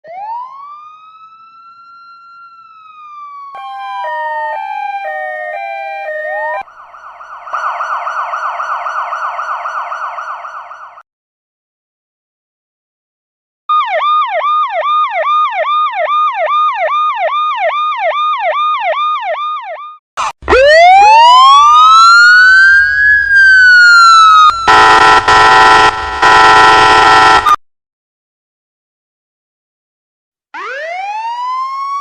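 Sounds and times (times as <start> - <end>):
fast falling siren sweep: 0.0 - 11.0, 13.7 - 27.6, 30.6 - 32.0
slow wailing siren: 0.0 - 11.0, 13.7 - 27.6, 30.6 - 32.0
loud steady horn blare: 24.6 - 27.6.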